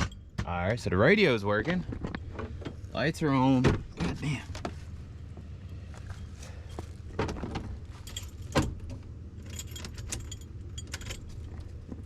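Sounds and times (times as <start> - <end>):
truck engine idling: 2.1 - 12.0
keys jangling on ring: 7.9 - 8.6, 9.4 - 11.6.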